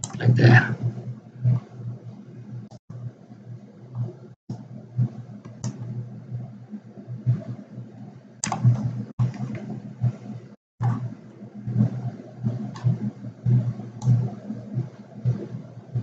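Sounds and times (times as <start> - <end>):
computer mouse clicking: 0.0 - 0.2, 5.4 - 5.9, 8.4 - 9.8, 10.8 - 11.1, 11.9 - 13.0, 14.0 - 14.4
steady low hum: 0.0 - 16.0.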